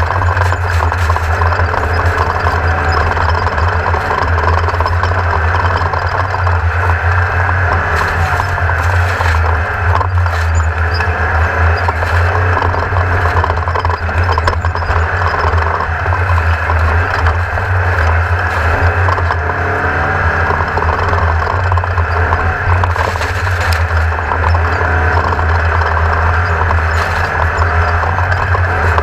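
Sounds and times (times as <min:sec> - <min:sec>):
buggy engine running at speed: 0:00.0 - 0:29.0
terrain noise: 0:00.0 - 0:29.0.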